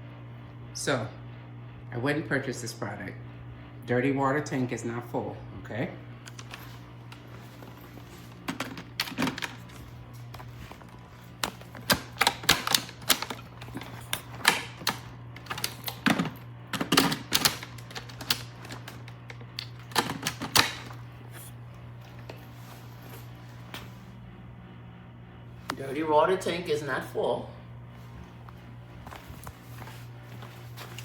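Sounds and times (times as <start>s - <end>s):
vacuum cleaner humming: 5.7s - 31.0s.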